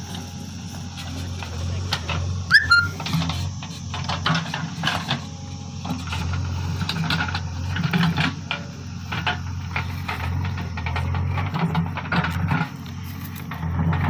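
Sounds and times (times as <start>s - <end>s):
diesel engine running: 0.0s - 14.0s
metallic clanks and rattles: 5.8s - 14.0s.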